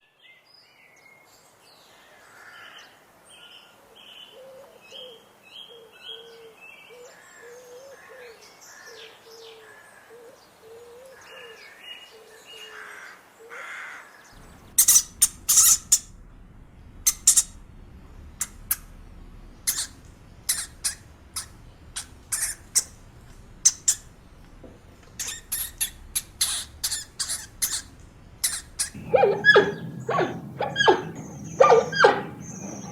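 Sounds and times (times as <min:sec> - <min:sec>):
bird chirps: 0:14.4 - 0:16.2, 0:17.0 - 0:18.9, 0:19.5 - 0:24.3, 0:25.1 - 0:32.9
bird calling low notes: 0:14.4 - 0:32.9
animal shrill squeaks: 0:25.2 - 0:32.9.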